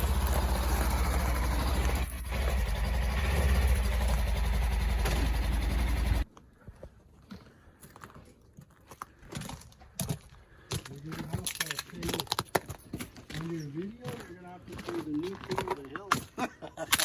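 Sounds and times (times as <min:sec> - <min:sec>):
engine idling: 0:00.0 - 0:06.3.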